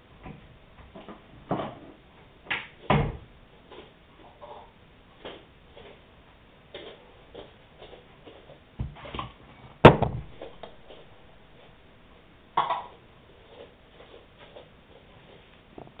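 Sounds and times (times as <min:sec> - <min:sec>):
sharp bang: 0:09.8 - 0:10.7.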